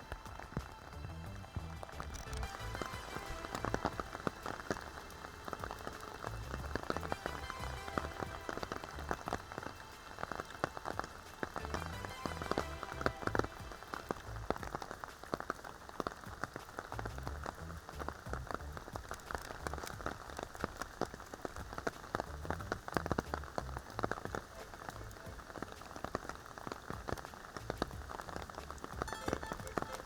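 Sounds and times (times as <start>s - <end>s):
rain falling: 0.0s - 30.0s.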